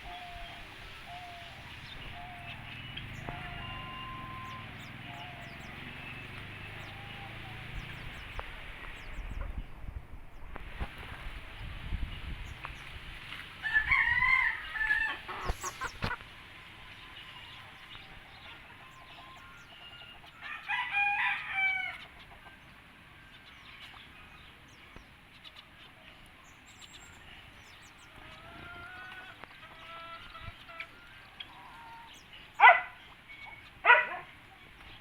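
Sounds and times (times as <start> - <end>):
rooster crowing: 3.2 - 5.6, 13.6 - 15.7, 18.7 - 22.1.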